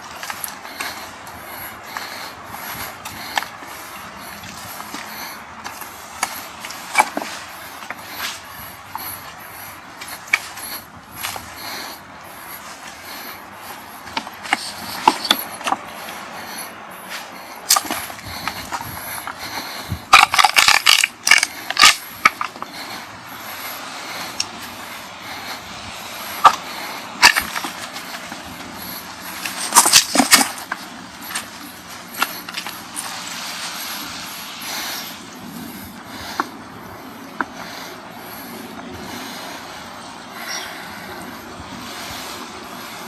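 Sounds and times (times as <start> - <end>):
beach wind: 0.0 - 43.0.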